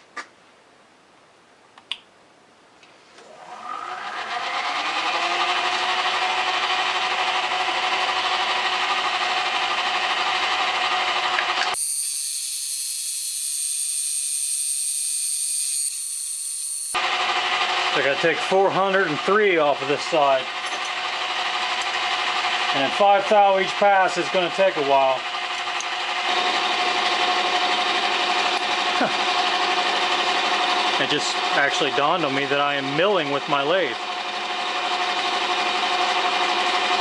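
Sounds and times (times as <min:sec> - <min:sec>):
high hiss: 0:11.8 - 0:17.0
lathe motor whining: 0:11.8 - 0:17.0.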